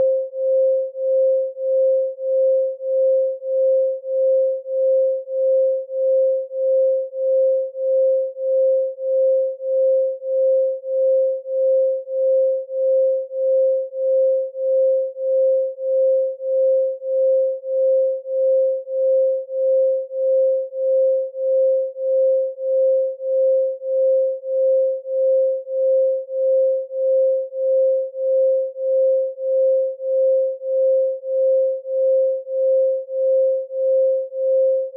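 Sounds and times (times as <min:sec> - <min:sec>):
pulsing sine tone: 0:00.0 - 0:34.9.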